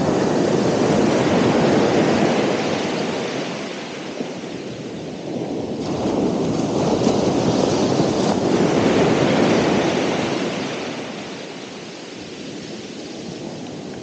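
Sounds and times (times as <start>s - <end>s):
ocean wave breaking: 0.0s - 14.0s.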